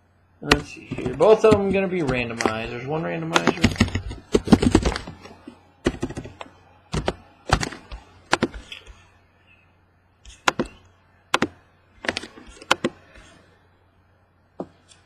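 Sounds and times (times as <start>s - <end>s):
keyboard keys clicking: 0.5s - 5.2s, 5.8s - 9.0s, 10.3s - 13.0s.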